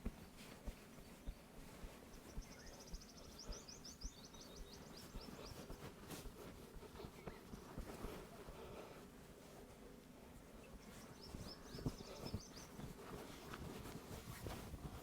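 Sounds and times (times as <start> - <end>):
low background noise: 0.0 - 15.0
small bird twittering: 2.1 - 5.9, 10.8 - 12.9.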